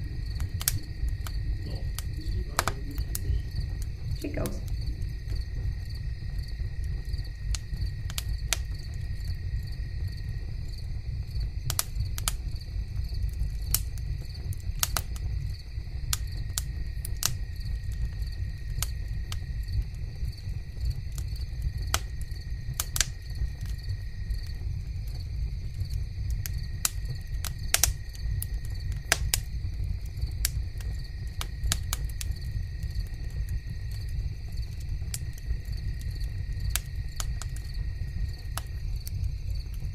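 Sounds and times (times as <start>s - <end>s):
low rumble: 0.0s - 26.4s
crickets chirping: 0.0s - 39.9s
sharp crackles: 0.0s - 39.9s.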